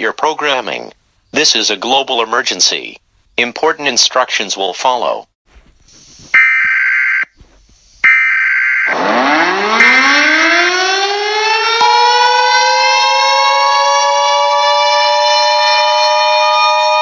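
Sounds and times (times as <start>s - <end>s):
civil defense siren winding up: 8.0s - 17.0s.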